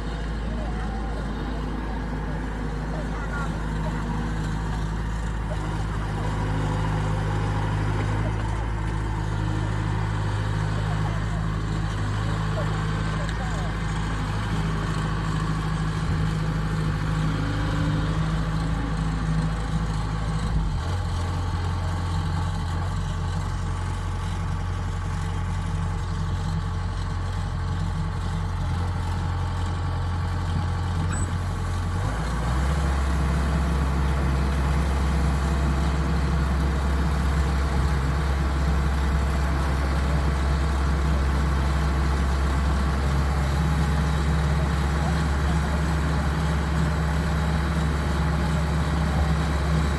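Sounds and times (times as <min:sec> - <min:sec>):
diesel engine droning: 0:00.0 - 0:49.9.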